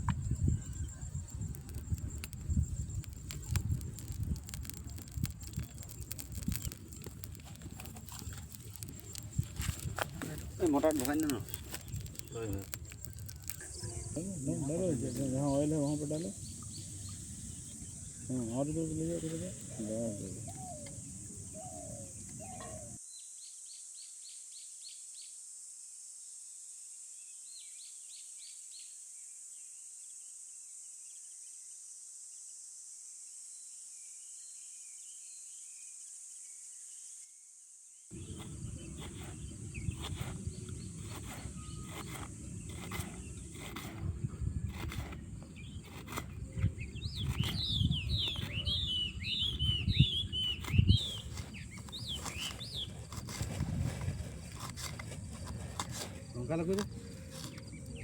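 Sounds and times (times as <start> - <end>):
low rumble with crackles: 0.0 - 14.2, 38.2 - 58.0
birds chirping: 0.0 - 23.0, 38.1 - 58.0
high insect drone: 0.0 - 27.6, 28.4 - 58.0.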